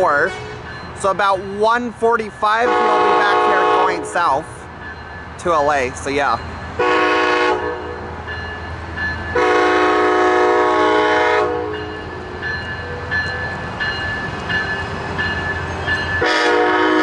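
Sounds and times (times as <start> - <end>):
diesel locomotive rumble: 0.0 - 17.0
train horn blasts: 2.7 - 4.1, 6.8 - 8.1, 9.3 - 11.9, 16.2 - 17.0.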